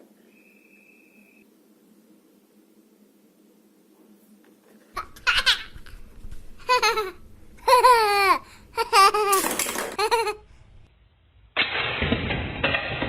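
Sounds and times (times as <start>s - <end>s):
child laughing and babbling: 5.0s - 6.0s, 6.6s - 10.5s.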